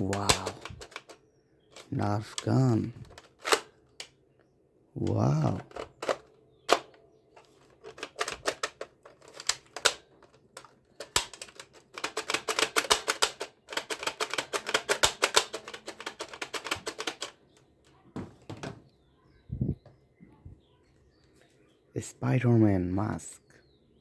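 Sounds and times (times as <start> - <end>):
plastic toy gun clicking: 0.0 - 4.2, 5.0 - 17.4.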